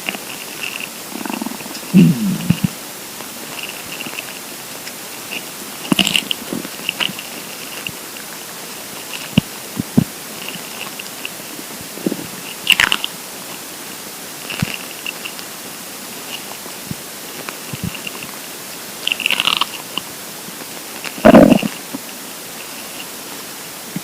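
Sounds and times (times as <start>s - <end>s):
steady hiss: 0.0s - 24.0s
stomach gurgling: 0.1s - 4.4s, 5.2s - 8.3s, 9.0s - 13.2s, 14.4s - 15.4s, 16.3s - 18.4s, 19.0s - 20.1s, 21.0s - 22.1s.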